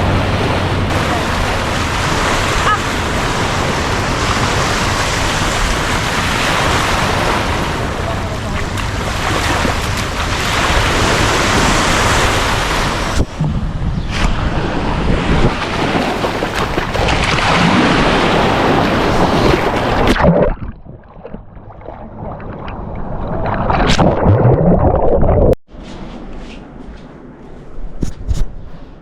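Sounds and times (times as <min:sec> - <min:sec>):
sea waves: 0:00.0 - 0:13.4, 0:14.1 - 0:20.4
wind on microphone: 0:00.0 - 0:21.0.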